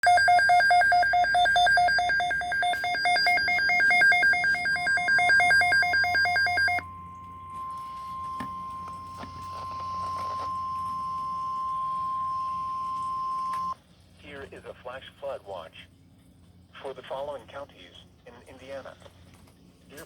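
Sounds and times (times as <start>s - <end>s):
steady single-pitch warning tone: 0.0s - 13.8s
two-tone electronic alarm warbling: 0.0s - 13.8s.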